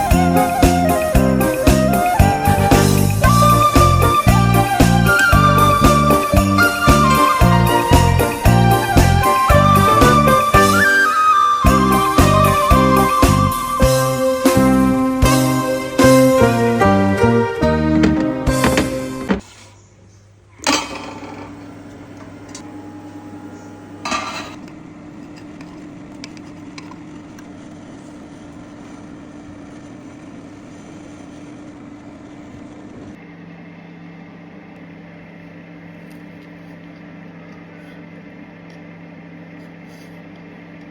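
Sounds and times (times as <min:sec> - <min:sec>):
steady hum with hiss: 0:00.0 - 0:40.9.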